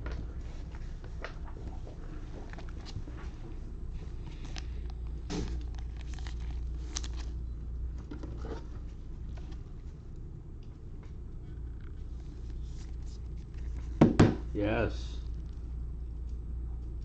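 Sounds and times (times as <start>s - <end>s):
low hum: 0.0s - 17.0s
trading cards clicking and rustling: 4.2s - 7.4s.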